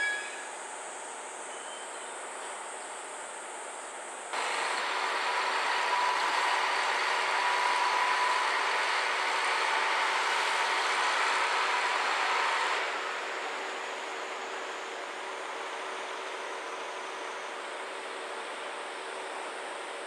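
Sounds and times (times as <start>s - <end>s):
train running: 4.4s - 20.0s.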